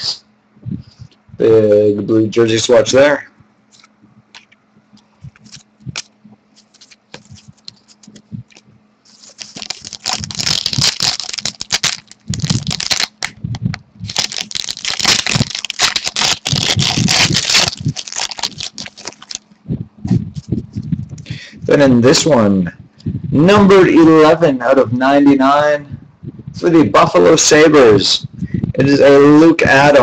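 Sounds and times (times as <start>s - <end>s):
wrapper tearing and crinkling: 5.4s - 8.1s, 9.1s - 13.4s, 14.1s - 19.4s.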